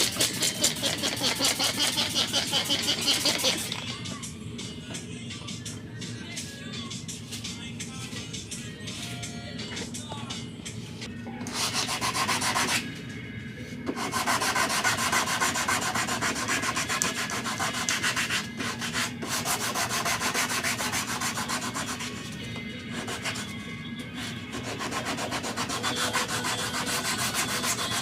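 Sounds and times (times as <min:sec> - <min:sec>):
sandpaper scraping painted metal: 0:00.0 - 0:03.8, 0:11.5 - 0:12.8, 0:13.9 - 0:23.6, 0:24.2 - 0:28.0.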